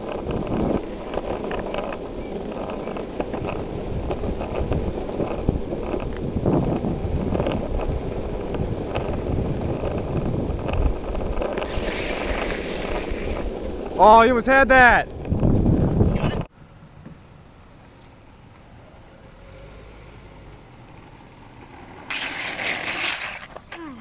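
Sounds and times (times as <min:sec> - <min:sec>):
longboard rolling over pavement: 0:00.0 - 0:16.5, 0:18.9 - 0:24.0
wind buffeting microphone: 0:00.0 - 0:16.5.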